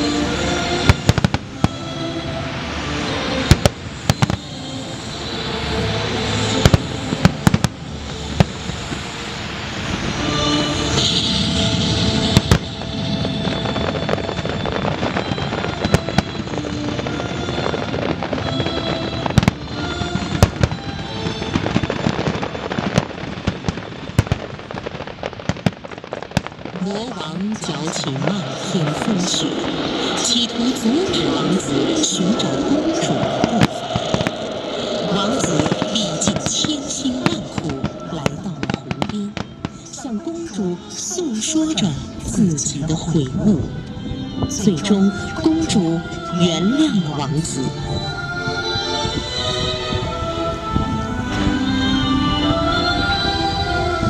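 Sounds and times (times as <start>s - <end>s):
fireworks bangs and crackling: 0.0s - 2.0s, 2.6s - 4.6s, 6.2s - 43.7s
orchestral music: 0.0s - 54.0s.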